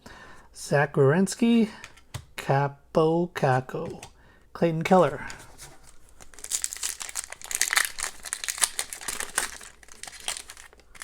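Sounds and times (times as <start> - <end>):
foil wrapper crinkling: 5.1 - 11.0.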